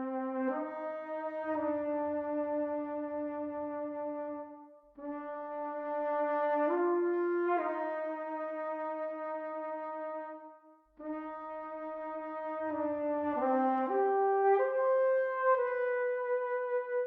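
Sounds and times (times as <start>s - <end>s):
solo cornet melody: 0.0s - 17.0s.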